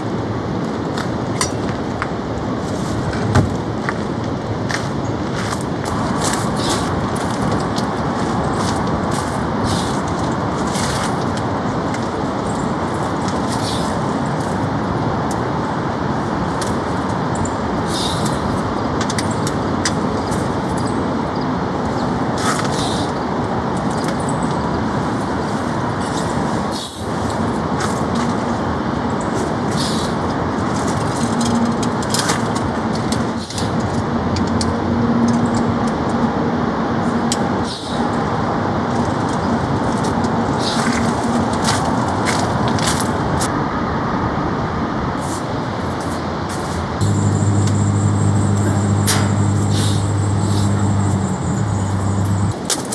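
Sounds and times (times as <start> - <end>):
heavy rain on a tarp: 37.5 - 43.4.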